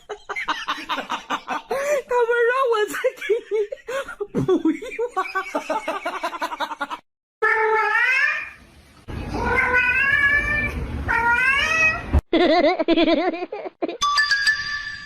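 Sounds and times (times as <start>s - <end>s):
cat meowing: 9.3s - 12.1s.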